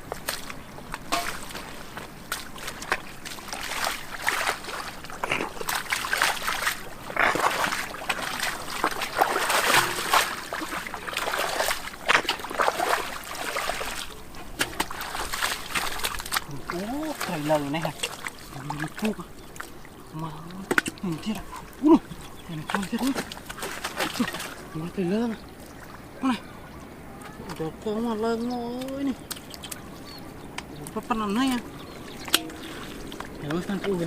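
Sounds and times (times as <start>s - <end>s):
muddy water splashing: 0.0s - 34.0s
water trickling and splattering: 0.0s - 34.0s.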